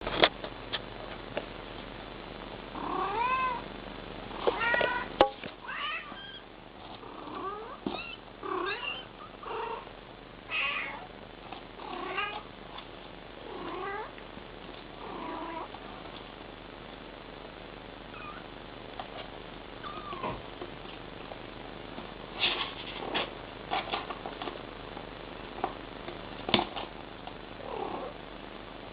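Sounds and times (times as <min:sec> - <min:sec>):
cat and kittens meowing: 0:02.8 - 0:03.6, 0:04.5 - 0:06.5, 0:07.2 - 0:09.9, 0:10.5 - 0:11.1, 0:19.8 - 0:20.4.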